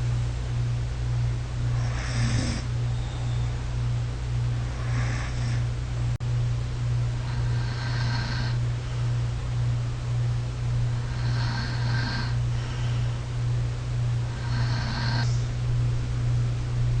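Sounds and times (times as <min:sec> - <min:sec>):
steady low hum: 0:00.0 - 0:17.0
soft snoring: 0:01.7 - 0:02.7, 0:04.6 - 0:05.7, 0:07.2 - 0:08.6, 0:11.0 - 0:13.2, 0:14.3 - 0:15.5
person breathing: 0:11.0 - 0:13.2.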